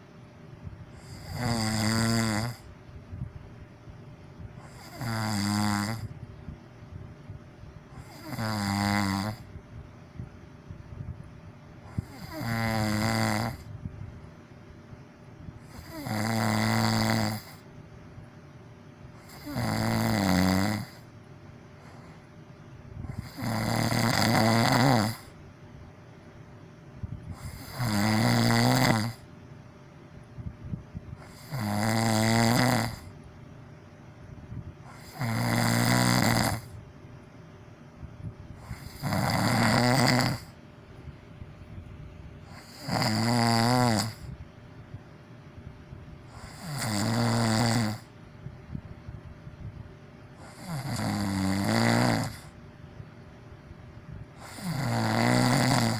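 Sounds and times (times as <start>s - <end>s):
person snoring loudly: 1.0s - 2.7s, 4.6s - 6.1s, 8.0s - 9.5s, 11.9s - 13.7s, 15.6s - 17.6s, 19.2s - 21.0s, 23.1s - 25.4s, 27.3s - 29.2s, 31.2s - 33.1s, 34.9s - 36.8s, 38.6s - 40.6s, 42.5s - 44.4s, 46.3s - 48.1s, 50.4s - 52.6s, 54.4s - 55.9s.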